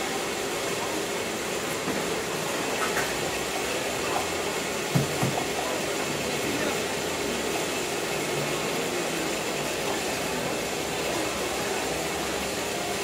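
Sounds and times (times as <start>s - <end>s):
faint voices talking: 3.6s - 13.0s.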